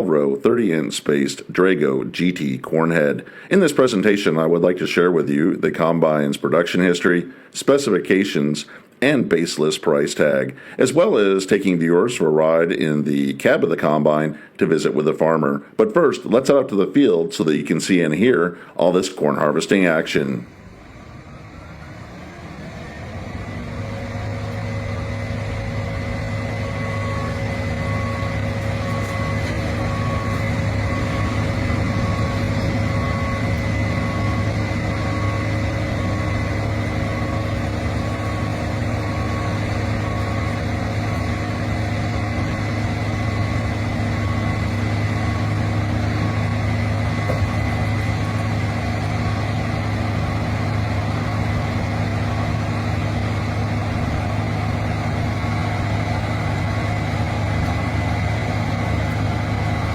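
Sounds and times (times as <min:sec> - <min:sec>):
diesel engine humming with whine: 0:00.0 - 0:59.9
short beeps: 0:24.7 - 0:41.2.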